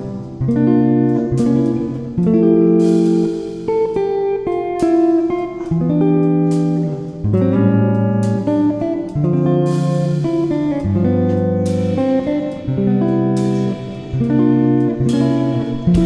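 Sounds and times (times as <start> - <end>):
guitar chords: 0.0 - 16.0
sharp hits: 15.7 - 16.0.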